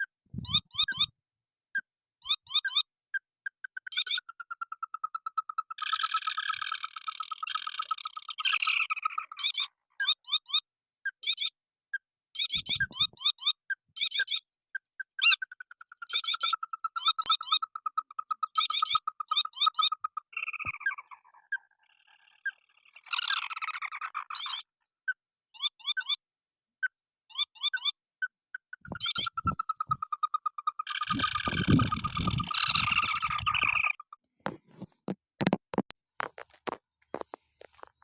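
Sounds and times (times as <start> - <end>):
crake chattering calls: 0.0 - 1.1, 3.5 - 11.5, 12.4 - 24.7, 28.6 - 34.2.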